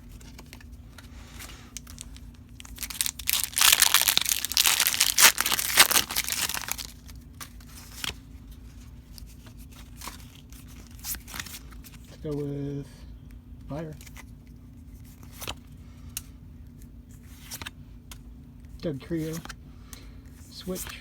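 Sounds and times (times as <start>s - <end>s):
cards rustling: 0.0s - 8.2s
foil wrapper tearing and crinkling: 1.7s - 7.2s.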